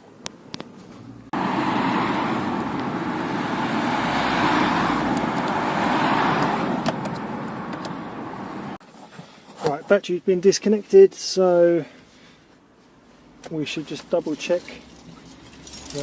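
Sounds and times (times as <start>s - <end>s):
road traffic rushing: 1.0s - 8.8s.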